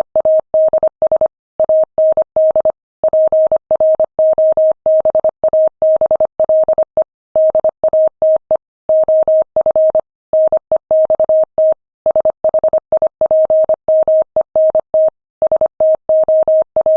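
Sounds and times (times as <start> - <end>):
morse code tone: 7.4 - 16.9.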